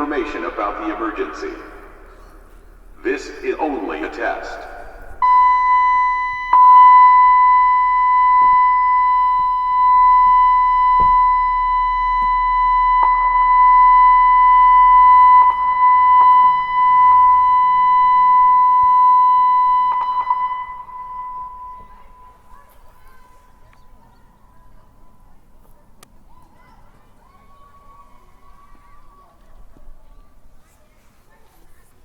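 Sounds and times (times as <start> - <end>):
warning speaker steady tone: 0.0 - 22.6.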